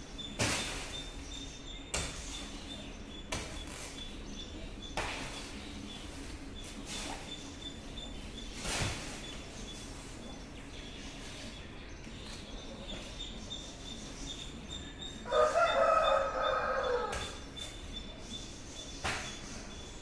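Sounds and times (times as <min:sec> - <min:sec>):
rooster crowing: 0:15.2 - 0:17.4.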